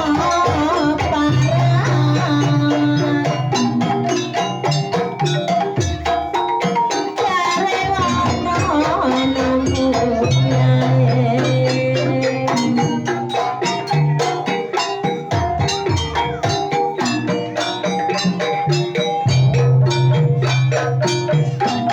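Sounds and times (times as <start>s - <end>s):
percussion ensemble playing: 0.0s - 21.9s
wavering melodic line: 0.0s - 21.9s.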